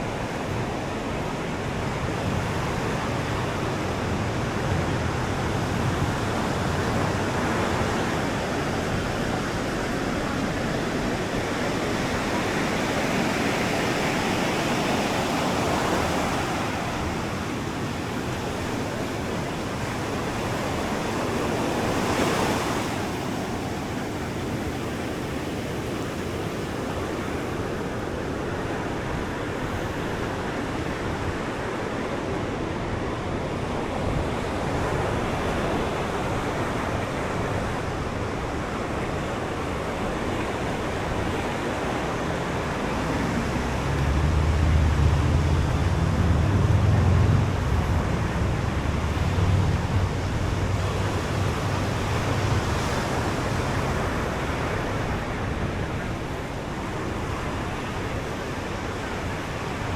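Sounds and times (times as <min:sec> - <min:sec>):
ocean waves breaking: 0:00.0 - 0:59.9
low rumble: 0:43.4 - 0:52.2.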